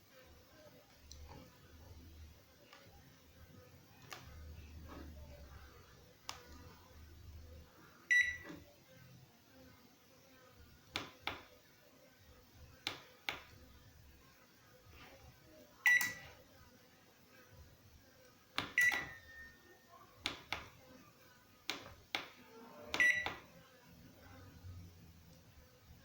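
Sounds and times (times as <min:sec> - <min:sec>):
microwave short high beep: 0:08.1 - 0:08.5, 0:15.9 - 0:16.2, 0:18.8 - 0:19.7, 0:23.0 - 0:23.4
push buttons clicking: 0:08.1 - 0:08.6, 0:15.9 - 0:16.2, 0:18.6 - 0:19.6, 0:20.2 - 0:20.7, 0:21.7 - 0:23.5.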